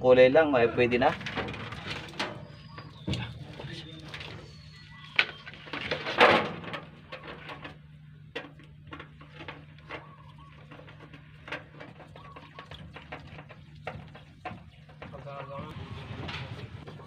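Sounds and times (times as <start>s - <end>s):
faint bird calls: 2.1s - 6.0s, 9.7s - 16.2s.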